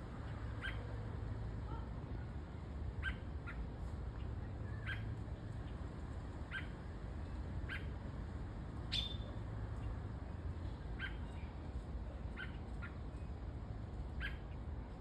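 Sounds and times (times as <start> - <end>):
small bird chirping: 6.5 - 6.7, 8.9 - 9.3, 14.1 - 14.6.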